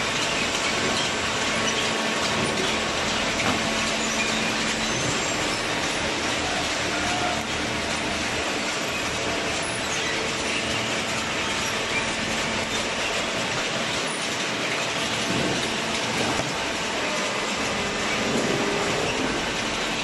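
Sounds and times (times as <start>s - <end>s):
baling machinery rattling and humming: 0.0s - 20.0s.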